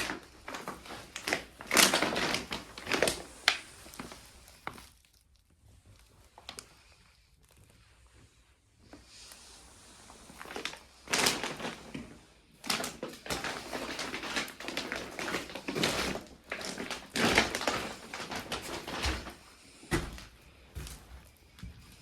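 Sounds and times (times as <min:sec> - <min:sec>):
footsteps crunching over debris: 0:13.3 - 0:22.0.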